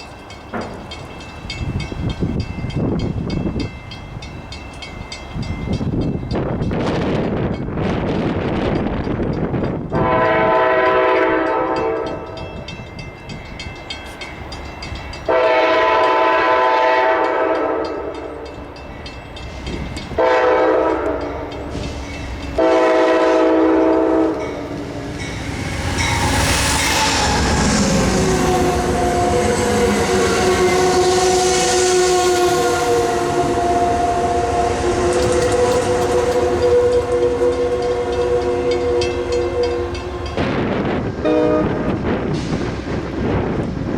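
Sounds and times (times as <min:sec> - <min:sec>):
train engine and wheels rumbling: 0:00.0 - 0:43.9
locomotive air horn blasts: 0:09.9 - 0:12.4, 0:15.3 - 0:18.3, 0:20.2 - 0:21.5, 0:22.6 - 0:24.8, 0:26.4 - 0:42.0.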